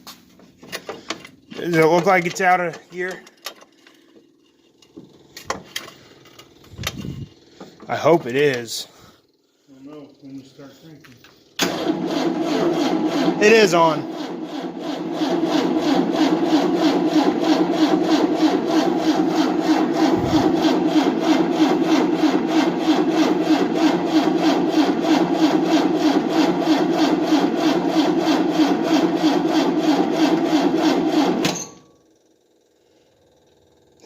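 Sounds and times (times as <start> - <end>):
starter cranking engine: 4.8 - 8.6, 11.6 - 31.6.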